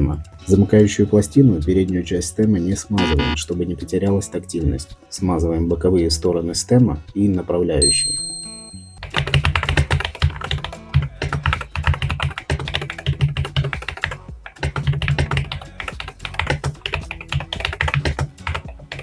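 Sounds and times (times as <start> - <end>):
typing on mechanical keyboard: 9.0 - 19.0.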